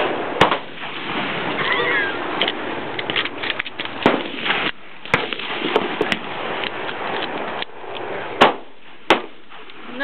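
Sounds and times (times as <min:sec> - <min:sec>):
pistol shots: 0:00.4 - 0:00.8, 0:08.4 - 0:09.4.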